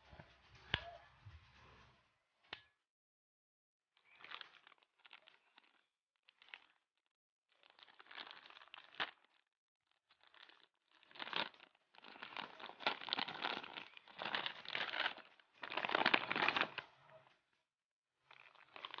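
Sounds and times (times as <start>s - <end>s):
packaging crinkling: 4.0s - 6.8s, 7.6s - 9.4s, 10.1s - 17.2s, 18.3s - 19.0s.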